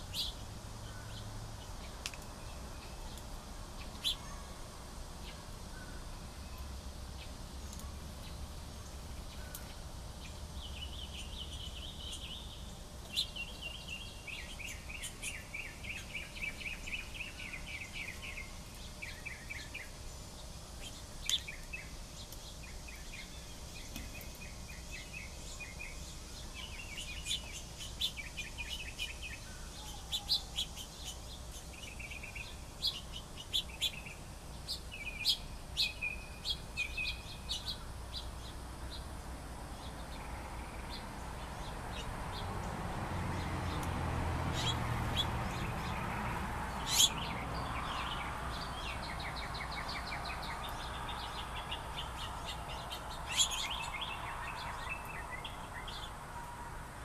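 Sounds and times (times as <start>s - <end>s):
songbirds singing and chirping: 0.0s - 57.0s.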